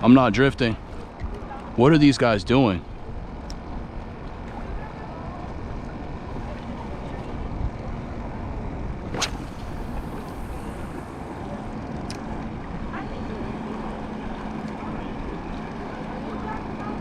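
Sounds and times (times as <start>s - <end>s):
boat motor hum: 0.0s - 17.0s
wind buffeting microphone: 6.8s - 15.5s.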